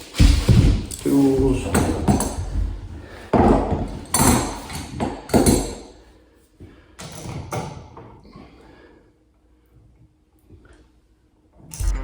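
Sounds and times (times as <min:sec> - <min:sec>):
tools knocking and clattering: 0:03.4 - 0:05.8.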